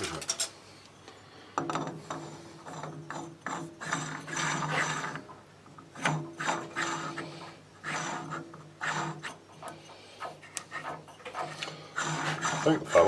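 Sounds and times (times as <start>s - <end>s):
lathe gear whir: 5.9s - 9.4s, 11.7s - 13.0s.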